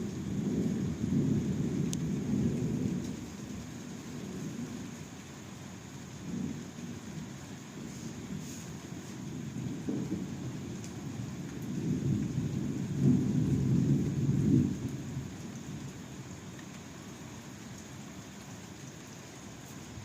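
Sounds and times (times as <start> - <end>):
rolling thunder: 0.0 - 4.8, 8.2 - 15.9
steady rain: 0.0 - 20.0.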